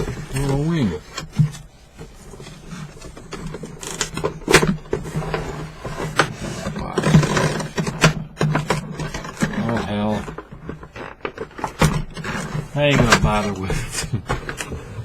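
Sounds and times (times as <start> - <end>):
packaging rustling and crinkling: 0.0 - 15.0.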